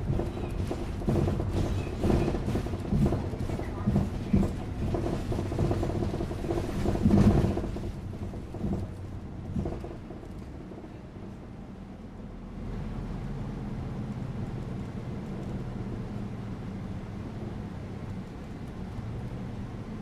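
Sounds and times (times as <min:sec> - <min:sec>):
bus body rattling: 0:00.0 - 0:12.5
bus engine rumbling: 0:00.0 - 0:20.0.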